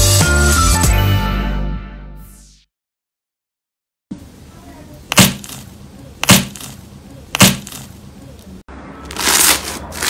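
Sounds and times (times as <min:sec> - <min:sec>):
crisp crunching: 0:09.1 - 0:10.0.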